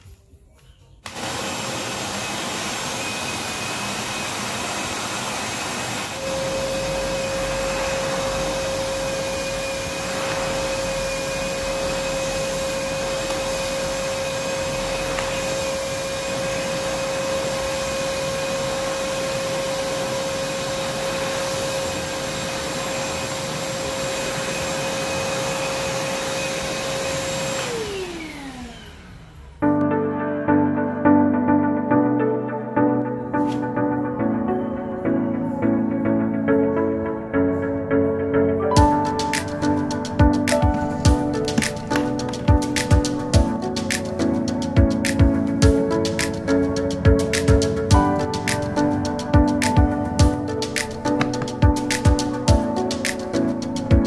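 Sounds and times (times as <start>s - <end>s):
vacuum cleaner running: 1.0s - 29.7s, 38.7s - 54.0s
strong steady whine: 6.0s - 29.6s.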